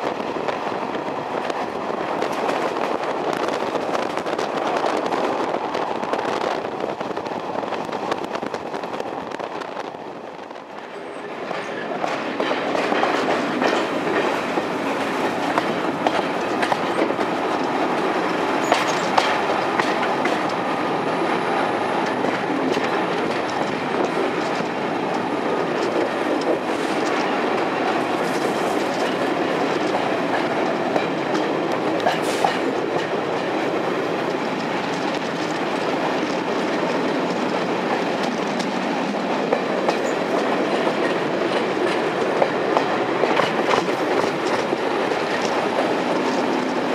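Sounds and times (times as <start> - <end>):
train rumbling on rails: 0.0 - 46.9
wheels clicking over rail joints: 10.6 - 46.9.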